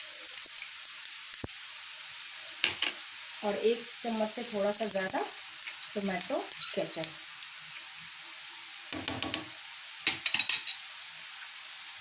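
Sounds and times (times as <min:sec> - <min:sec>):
vegetables sizzling in oil: 0:00.0 - 0:12.0
spatula scraping a pan: 0:04.9 - 0:08.0.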